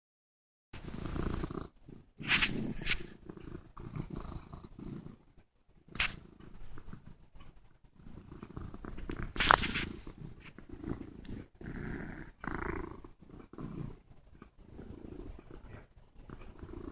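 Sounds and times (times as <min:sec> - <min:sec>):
cat purring: 0:00.8 - 0:16.9
cat brushing against phone: 0:02.2 - 0:03.2, 0:06.0 - 0:06.2, 0:09.2 - 0:10.6.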